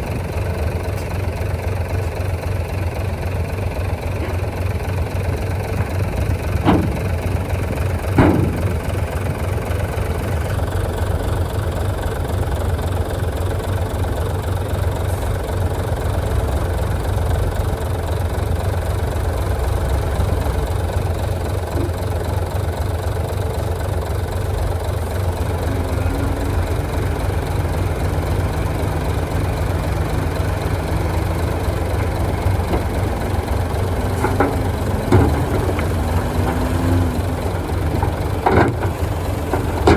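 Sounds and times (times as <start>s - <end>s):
bulldozer diesel engine droning: 0.0s - 39.9s
higher engine tone climbing: 24.8s - 39.9s.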